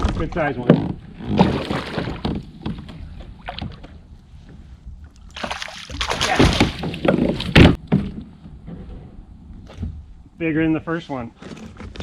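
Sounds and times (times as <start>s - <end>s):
water splashing around a kayak: 1.2s - 4.1s, 5.2s - 7.8s
irregular splashes and clatter: 5.2s - 7.8s.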